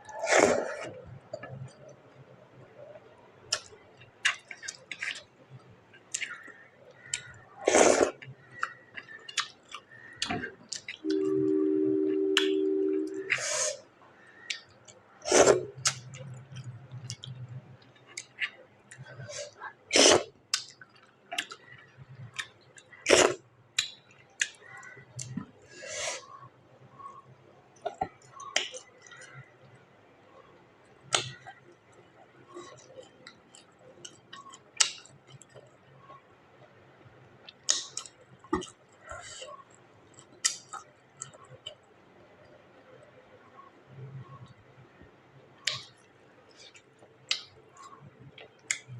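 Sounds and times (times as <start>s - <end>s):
mouth clicks and smacks chewing: 8.3s - 11.0s, 32.7s - 36.2s, 45.6s - 48.9s
steady hum: 11.0s - 13.7s.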